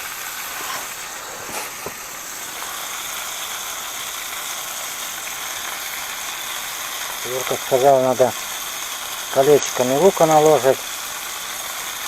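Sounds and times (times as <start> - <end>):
fish sizzling in a pan: 0.0 - 12.0.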